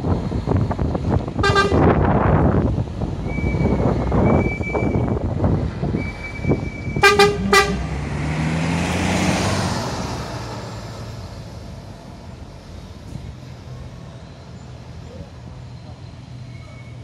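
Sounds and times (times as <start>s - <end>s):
diesel engine drone: 0.0s - 17.0s
vehicle horn toots: 1.4s - 1.9s, 6.9s - 7.9s.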